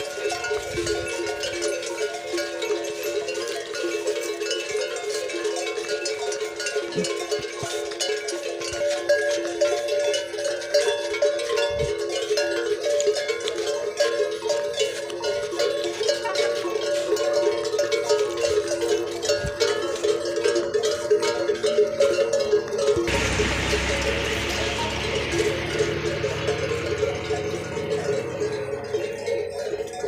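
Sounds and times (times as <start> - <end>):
camel bells clanking: 0.0 - 30.0
steady rushing noise: 23.2 - 28.6.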